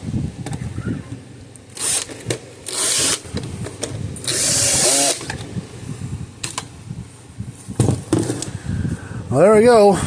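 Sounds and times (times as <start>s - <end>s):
power screwdriver driving screws: 1.7s - 3.2s, 4.2s - 5.4s.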